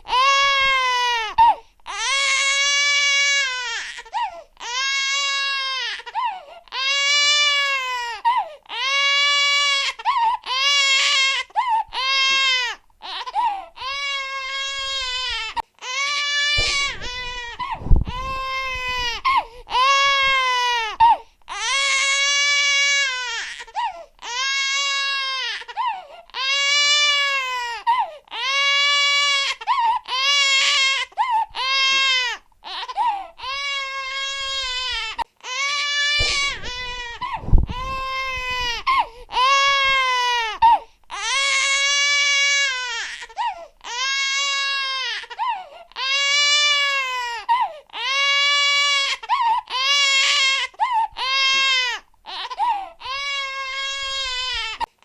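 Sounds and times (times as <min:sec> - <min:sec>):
infant crying: 0:00.0 - 0:55.0
low bump: 0:16.6 - 0:19.3, 0:36.2 - 0:39.1.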